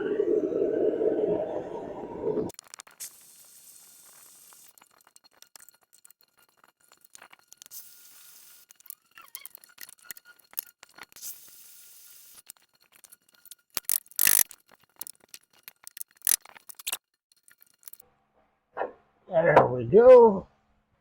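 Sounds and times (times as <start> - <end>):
hand tools on metal: 4.7 - 11.2, 12.3 - 18.0.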